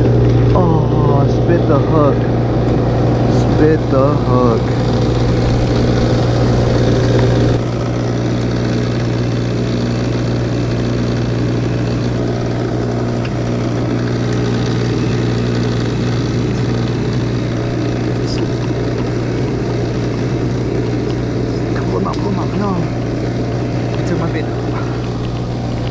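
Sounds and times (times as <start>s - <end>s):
engine humming steadily: 0.0s - 25.9s.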